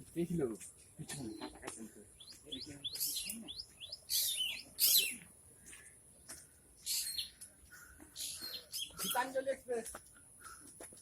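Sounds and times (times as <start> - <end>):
birds chirping: 0.5 - 11.0
harsh bird calls: 1.2 - 5.3, 6.8 - 9.4.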